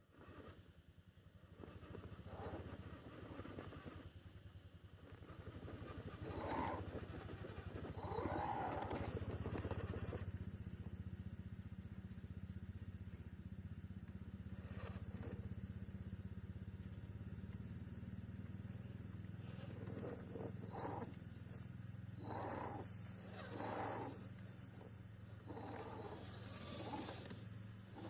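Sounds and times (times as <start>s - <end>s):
electric motor whirring with whine: 5.4s - 7.0s, 7.8s - 9.7s, 19.3s - 28.0s.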